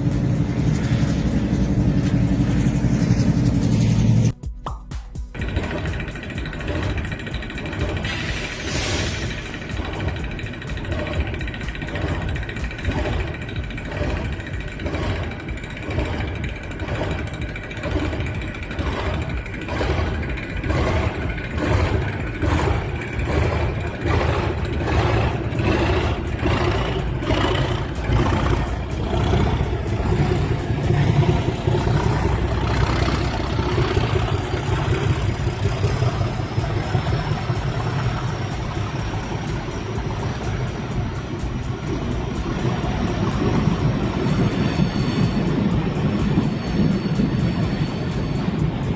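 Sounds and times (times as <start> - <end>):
low rumble: 0.0 - 4.4, 5.3 - 48.9
rising whine: 0.0 - 4.4, 5.4 - 48.9
train rhythmic beat quickening: 0.0 - 48.9.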